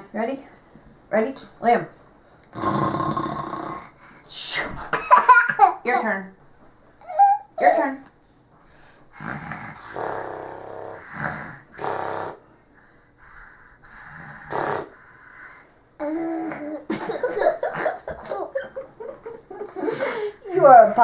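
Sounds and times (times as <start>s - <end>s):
child fake snoring: 2.5s - 4.1s, 9.1s - 12.5s, 13.9s - 16.8s.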